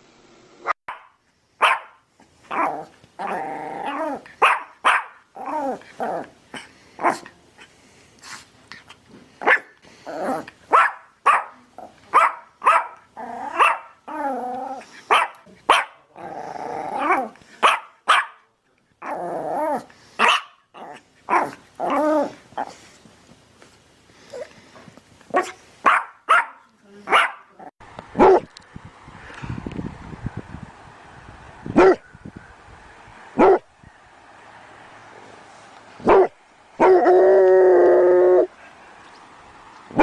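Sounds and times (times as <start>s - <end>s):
dog barking: 0.9s - 2.8s, 4.4s - 5.2s, 7.0s - 7.2s, 9.4s - 9.7s, 10.7s - 14.0s, 15.1s - 16.1s, 17.0s - 18.5s, 20.2s - 20.6s, 25.4s - 27.6s, 28.2s - 28.5s, 31.8s - 32.0s, 33.4s - 33.7s, 36.0s - 36.9s.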